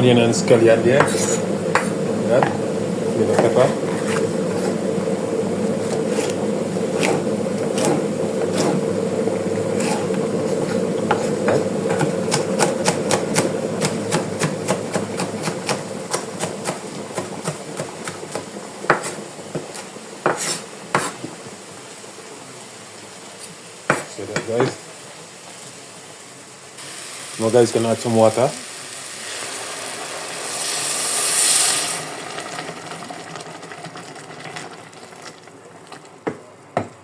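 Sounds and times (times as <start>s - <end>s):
steady hum: 0.0s - 22.5s.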